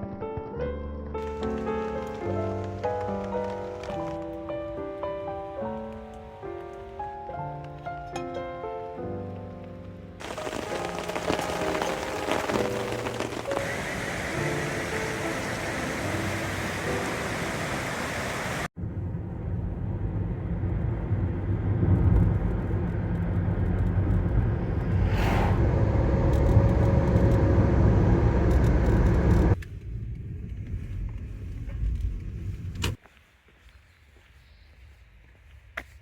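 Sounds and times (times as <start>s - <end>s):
car engine and road noise: 9.9s - 33.0s.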